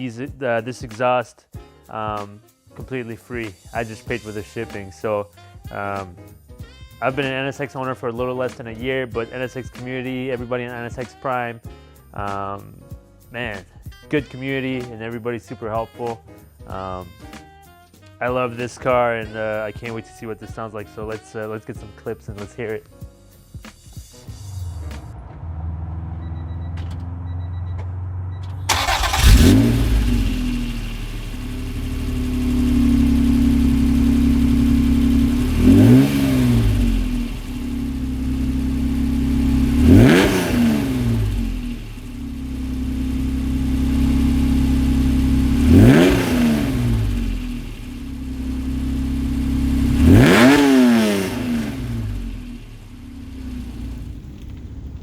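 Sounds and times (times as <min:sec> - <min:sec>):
car engine idling and revving: 0:24.3 - 0:55.0.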